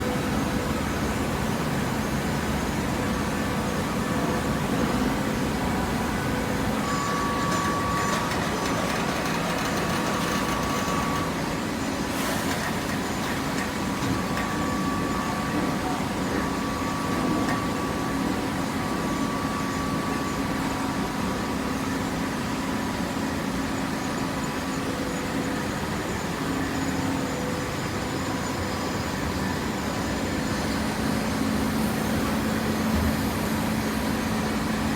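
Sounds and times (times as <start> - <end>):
baler machine hum: 0.0 - 21.8
faint hydraulic whining: 3.8 - 21.1.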